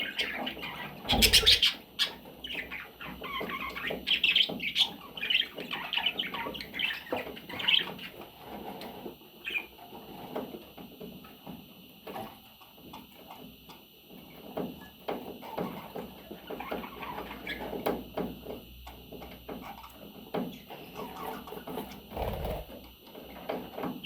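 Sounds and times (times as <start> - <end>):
budgerigar chattering: 1.1 - 2.2.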